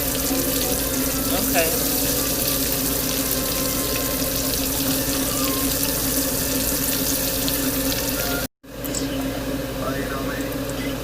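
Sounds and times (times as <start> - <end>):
vegetables sizzling in oil: 0.0 - 8.5.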